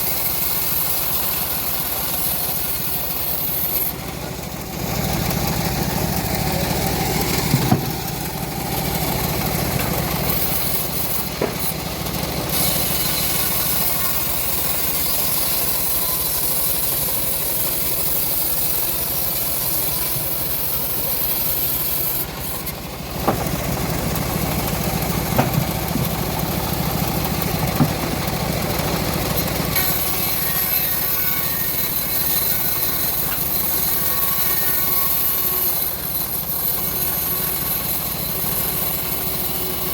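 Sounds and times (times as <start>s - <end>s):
bandsaw sawmill cutting log: 0.0s - 39.9s
sharp knocks: 7.4s - 8.1s, 23.2s - 23.8s, 25.2s - 26.2s, 27.6s - 28.3s.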